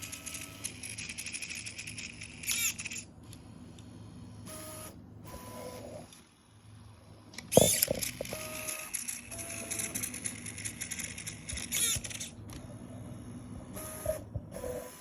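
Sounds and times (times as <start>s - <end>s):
servo whirring: 7.5s - 15.0s
stepper motors whining: 7.5s - 15.0s.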